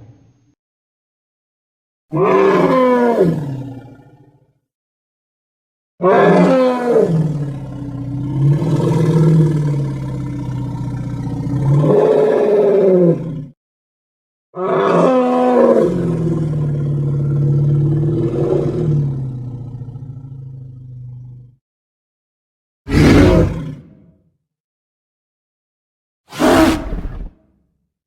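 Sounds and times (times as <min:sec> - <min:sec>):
dinosaur roaring: 0:02.1 - 0:04.3, 0:06.0 - 0:13.6, 0:14.6 - 0:21.5, 0:22.9 - 0:24.1, 0:26.3 - 0:27.4.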